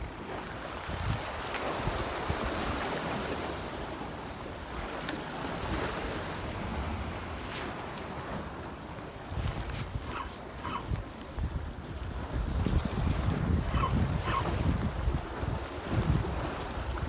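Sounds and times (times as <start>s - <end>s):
wind buffeting microphone: 0.0s - 3.7s, 9.2s - 17.0s
heavy surf against breakwater: 0.0s - 17.0s.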